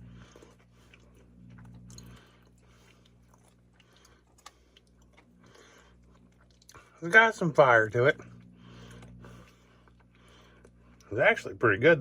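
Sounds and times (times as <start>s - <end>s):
person chewing food: 0.0s - 7.2s, 8.2s - 11.1s
small crunches: 0.0s - 7.3s.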